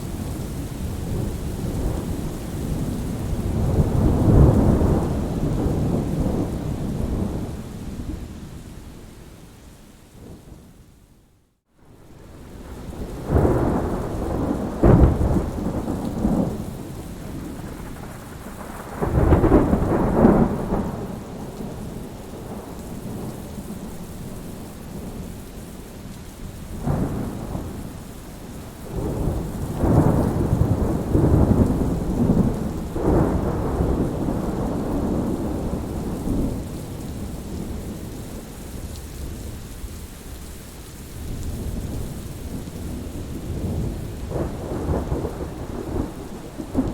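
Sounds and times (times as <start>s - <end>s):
thunder rumbling: 0.0s - 8.6s, 12.0s - 25.3s, 26.8s - 39.6s, 41.4s - 46.9s
steady rain: 0.0s - 46.9s.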